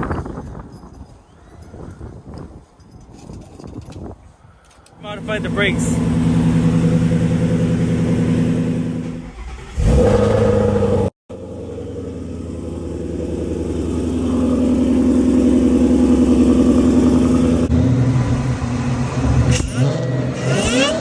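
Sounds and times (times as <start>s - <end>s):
car engine running: 5.1s - 21.0s.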